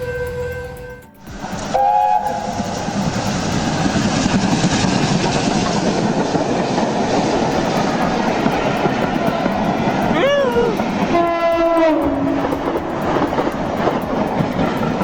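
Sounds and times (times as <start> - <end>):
train rumbling past: 0.0 - 15.0
wheels clattering on rail: 0.0 - 15.0.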